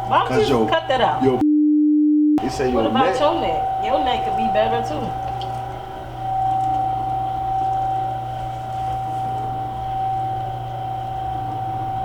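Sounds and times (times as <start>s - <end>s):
low electrical hum: 0.0s - 1.4s, 2.4s - 12.0s
high-pitched whine: 2.4s - 12.0s.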